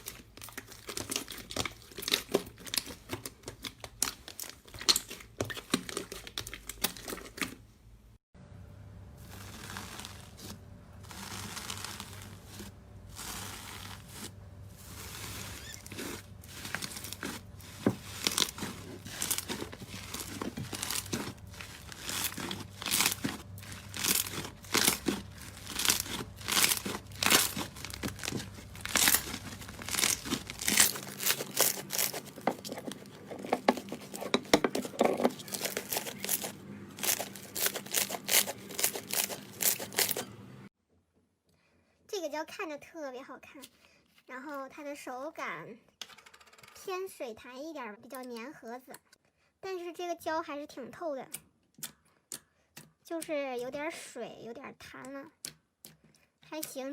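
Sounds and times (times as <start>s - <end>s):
slime being kneaded by hand: 0.0s - 7.4s, 9.2s - 40.3s.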